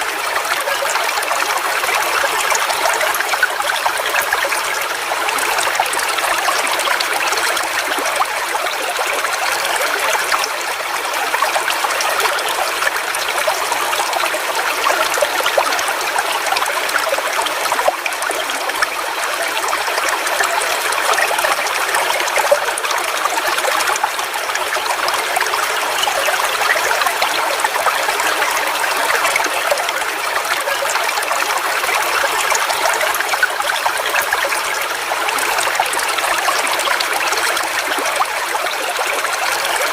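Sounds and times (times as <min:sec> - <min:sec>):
small waterfall splashing: 0:00.0 - 0:39.9.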